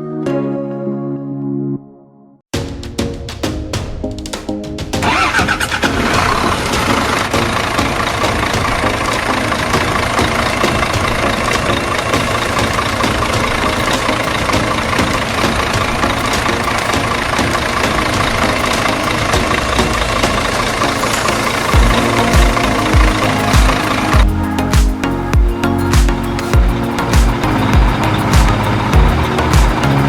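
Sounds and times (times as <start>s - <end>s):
heavy vehicle engine idling: 21.5s - 30.0s
deep low thumps: 21.8s - 30.0s.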